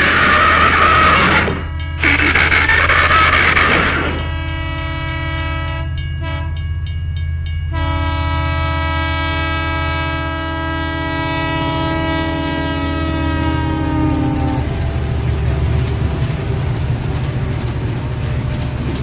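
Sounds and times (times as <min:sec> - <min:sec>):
steady low rumble: 0:00.0 - 0:04.8
train horn blaring chord: 0:00.6 - 0:06.8, 0:07.7 - 0:15.5.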